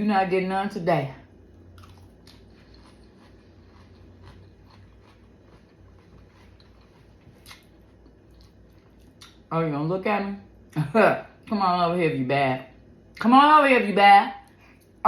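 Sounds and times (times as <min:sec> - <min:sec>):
person chewing food: 0:01.5 - 0:09.4.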